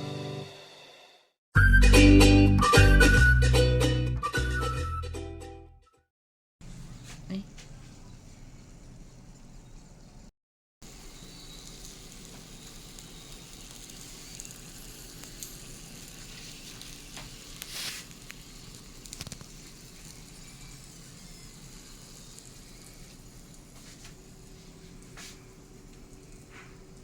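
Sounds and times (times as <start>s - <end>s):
food sizzling: 10.8s - 27.0s
clicks and pops: 19.1s - 19.6s.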